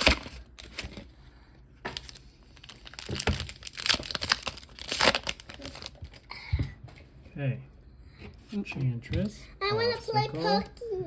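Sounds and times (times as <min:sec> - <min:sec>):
foil wrapper crinkling and tearing: 0:01.9 - 0:06.3.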